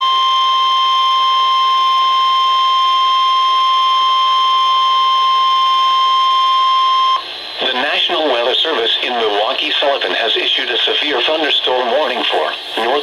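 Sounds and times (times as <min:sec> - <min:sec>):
steady alarm tone: 0:00.0 - 0:07.8.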